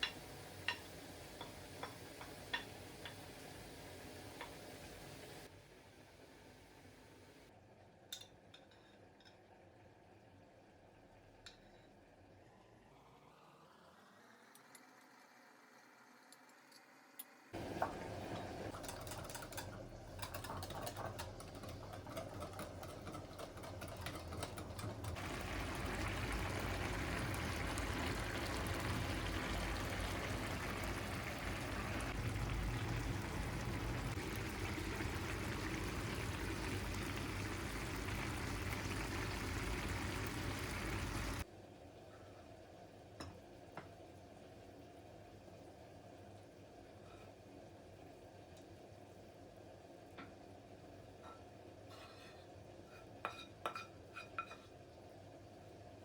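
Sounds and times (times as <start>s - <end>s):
water running from a tap: 24.7s - 41.4s.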